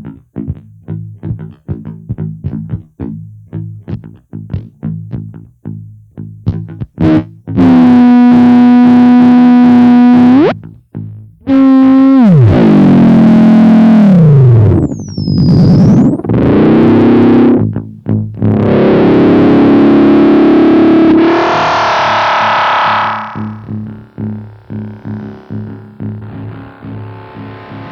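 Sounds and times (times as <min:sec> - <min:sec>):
distorted electronic noise: 0:07.6 - 0:10.5, 0:11.5 - 0:17.6, 0:18.4 - 0:27.9.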